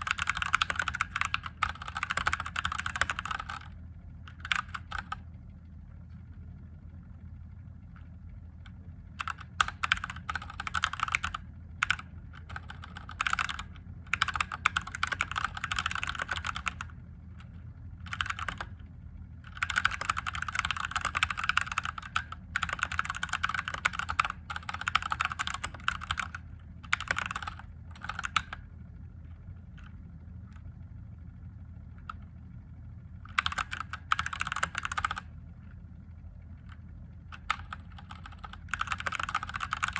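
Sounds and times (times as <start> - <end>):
mechanical keyboard typing: 0.0 - 5.3, 8.7 - 18.8, 19.4 - 28.7, 33.2 - 35.3, 36.6 - 39.9
faint steady hum: 0.0 - 39.9.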